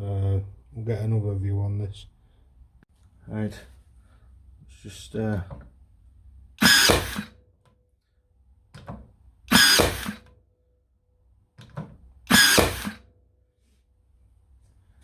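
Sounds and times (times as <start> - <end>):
nail gun firing into wood: 6.6 - 7.4, 9.5 - 10.4, 12.3 - 13.1.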